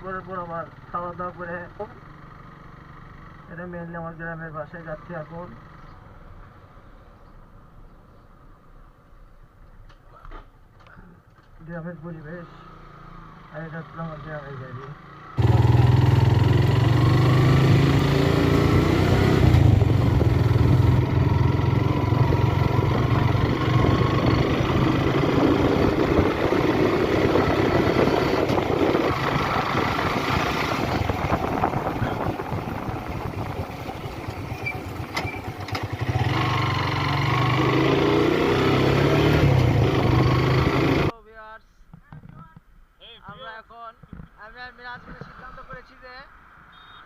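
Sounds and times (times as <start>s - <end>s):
motorcycle engine running: 14.9s - 41.1s.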